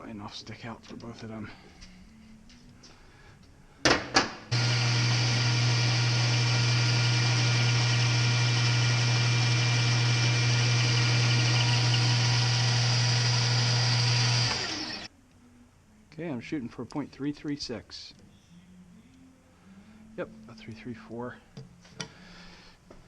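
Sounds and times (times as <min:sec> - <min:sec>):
metal lathe running: 0:04.5 - 0:15.1.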